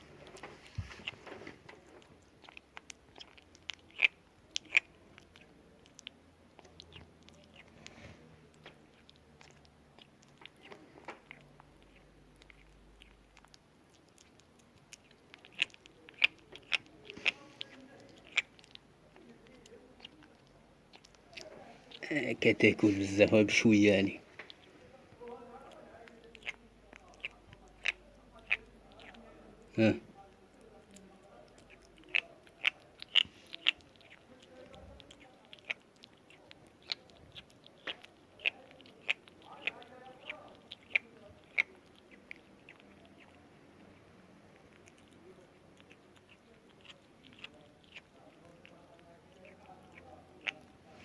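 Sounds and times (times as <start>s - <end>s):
kitten chewing food: 0.0s - 51.0s.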